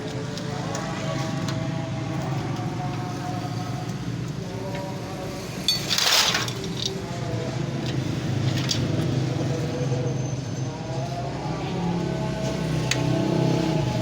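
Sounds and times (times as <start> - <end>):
background engine hum: 0.0 - 14.0
metal tools clinking: 5.6 - 7.1.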